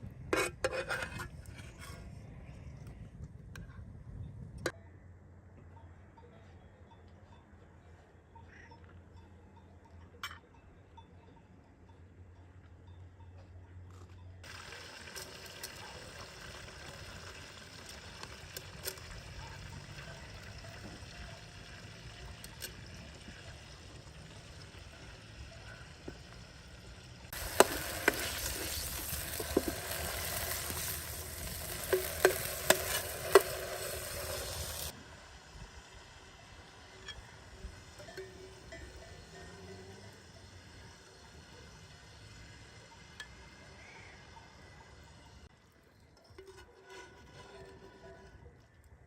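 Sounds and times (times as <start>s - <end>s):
food sizzling in hot oil: 14.4s - 22.1s, 26.9s - 38.7s
utensil clinking on pan: 27.3s - 34.9s, 37.0s - 40.0s.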